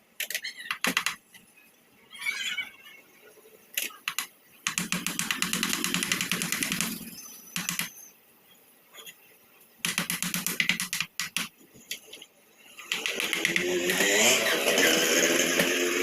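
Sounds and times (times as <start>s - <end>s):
engine running: 13.0s - 16.0s.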